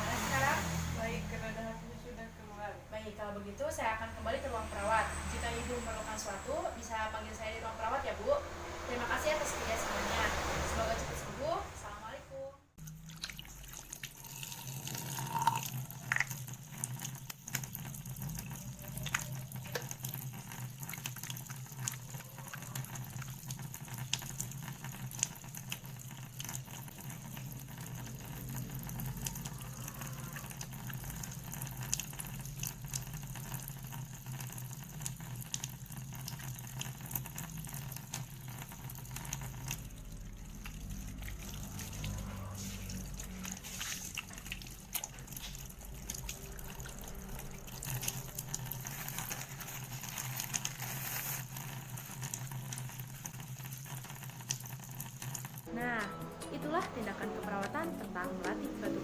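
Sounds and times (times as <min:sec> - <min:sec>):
steady low hum: 0:02.3 - 0:12.8
tap water running into sink: 0:12.8 - 0:55.7.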